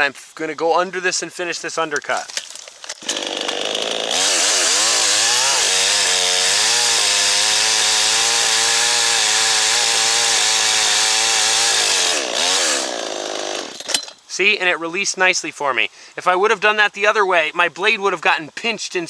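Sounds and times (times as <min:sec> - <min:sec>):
chainsaw cutting log: 0:02.8 - 0:13.9.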